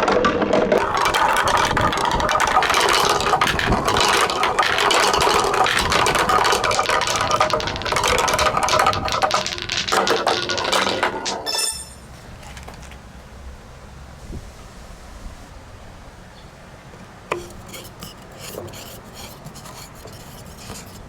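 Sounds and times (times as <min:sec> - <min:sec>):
marbles rolling and clattering: 0:00.0 - 0:12.1.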